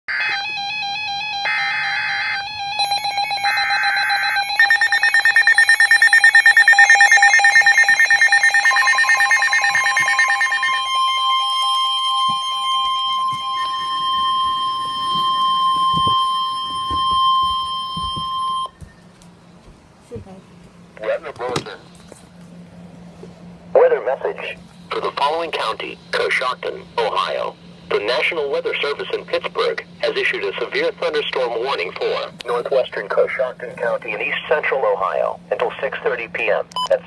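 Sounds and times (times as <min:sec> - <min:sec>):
steady warning alarm tone: 0:00.1 - 0:19.1, 0:23.7 - 0:37.0
chopped data-burst tones: 0:02.7 - 0:18.8
fast electronic beeping: 0:02.8 - 0:18.7.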